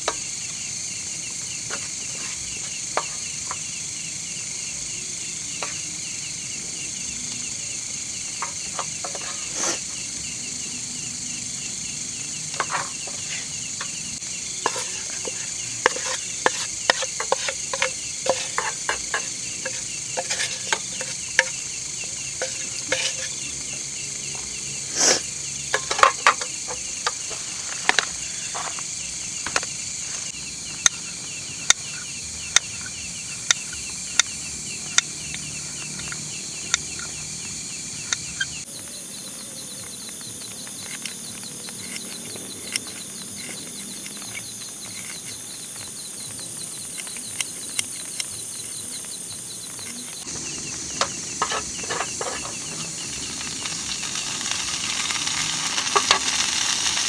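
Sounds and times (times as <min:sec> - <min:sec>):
crickets chirping: 0:00.0 - 0:57.0.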